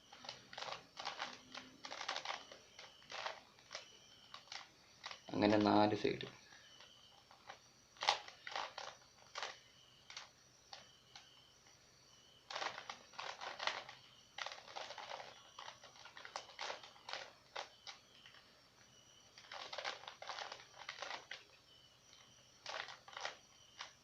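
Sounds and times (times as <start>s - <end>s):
plastic cube clicking turns: 0.1s - 5.3s, 7.3s - 11.3s, 12.5s - 18.4s, 19.4s - 21.5s, 22.6s - 24.0s.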